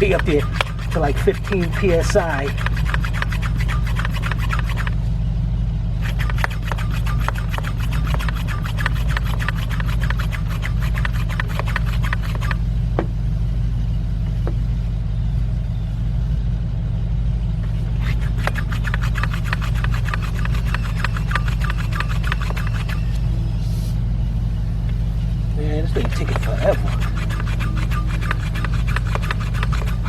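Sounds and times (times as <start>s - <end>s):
hand pump rasping strokes: 0.0s - 5.0s, 6.0s - 12.6s, 17.8s - 23.5s, 25.7s - 30.0s
steady low hum: 0.0s - 30.0s.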